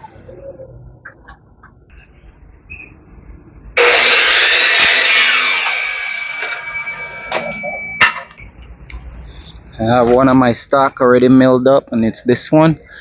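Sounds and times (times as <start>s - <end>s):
power saw cutting wood: 3.8s - 7.6s
steady saw whine: 3.8s - 8.3s.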